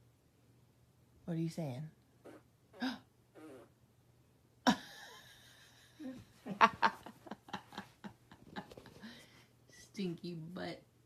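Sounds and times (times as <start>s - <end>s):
person laughing: 4.7s - 9.0s.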